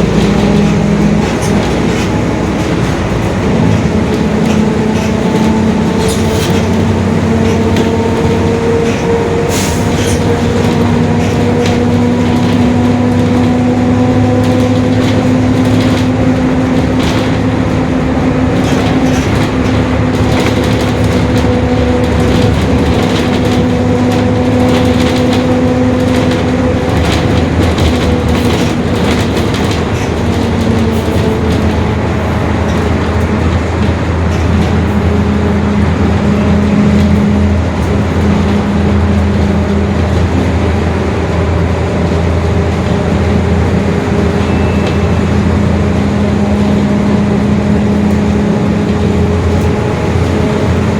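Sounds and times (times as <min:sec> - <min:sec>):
bus diesel engine running: 0:00.0 - 0:50.9
rattles and clicks: 0:00.0 - 0:50.9.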